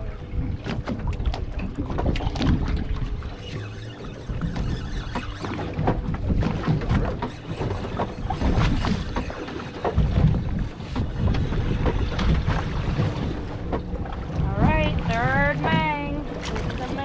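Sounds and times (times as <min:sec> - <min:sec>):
wind buffeting microphone: 0:04.2 - 0:17.0
steady low rumble: 0:10.0 - 0:17.0.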